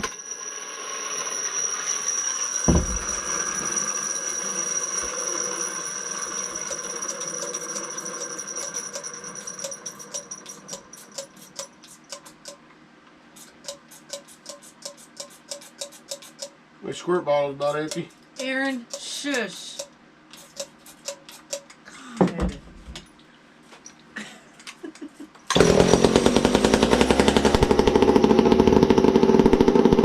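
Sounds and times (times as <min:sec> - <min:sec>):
thump: 0:02.7 - 0:03.2.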